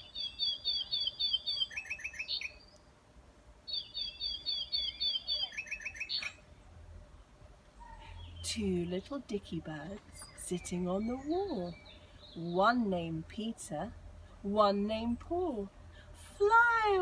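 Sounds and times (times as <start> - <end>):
songbird singing: 0.0 - 17.0.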